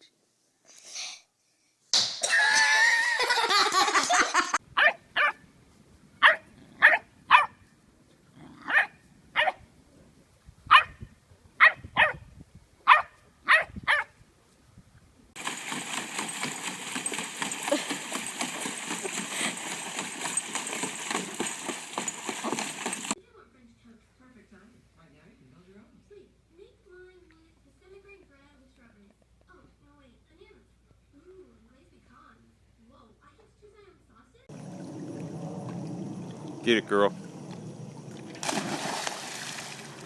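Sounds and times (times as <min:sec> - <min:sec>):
dog barking: 0:04.8 - 0:05.4, 0:06.2 - 0:07.6, 0:08.6 - 0:09.6, 0:10.7 - 0:11.0, 0:11.6 - 0:12.2, 0:12.9 - 0:14.1.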